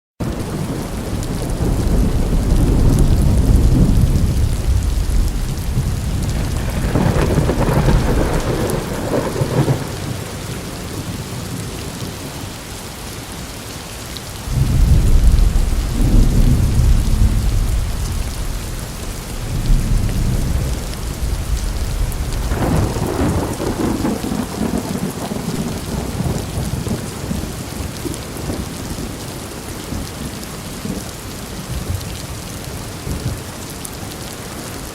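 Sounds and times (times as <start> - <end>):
thunder rumbling: 0.2 - 11.7, 14.5 - 29.0
steady rain falling: 0.2 - 34.9.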